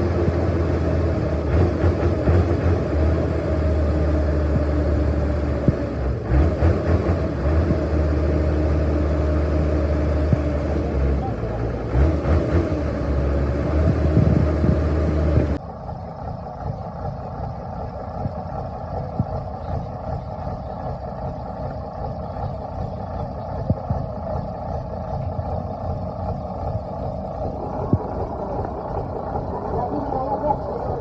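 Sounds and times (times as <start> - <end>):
loud low machine hum: 0.0 - 31.0
mechanical running sound: 13.8 - 31.0.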